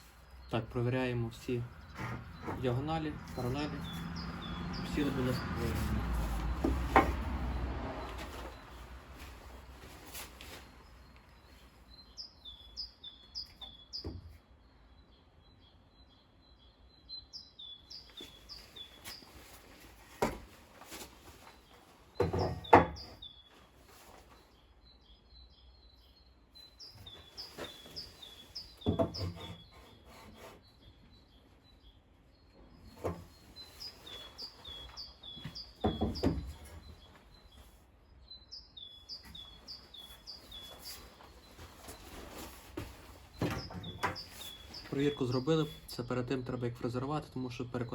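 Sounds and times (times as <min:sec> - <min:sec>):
songbird chirping: 0:00.0 - 0:47.9
scraping rubs on tabletop: 0:27.6 - 0:30.7.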